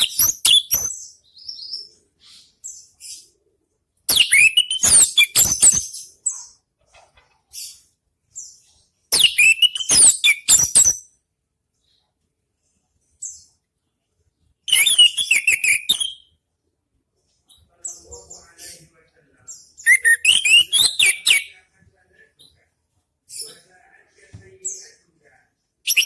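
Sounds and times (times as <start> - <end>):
thrush singing whistled notes: 0.0 - 1.0, 4.1 - 5.8, 9.2 - 11.0, 14.7 - 16.3, 19.8 - 21.5.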